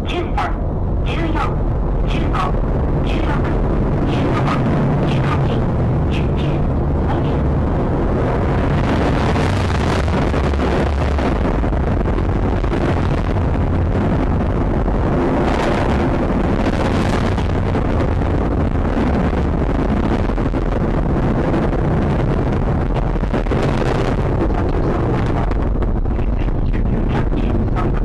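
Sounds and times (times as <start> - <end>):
rocket exhaust rumble: 0.0 - 28.0.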